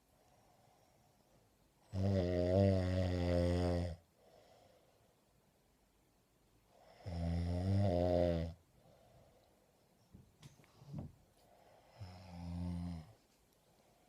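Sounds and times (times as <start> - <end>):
woman snoring loudly: 1.9 - 4.0, 7.0 - 8.6, 12.0 - 13.1
faint breath: 4.1 - 5.4, 8.7 - 12.4.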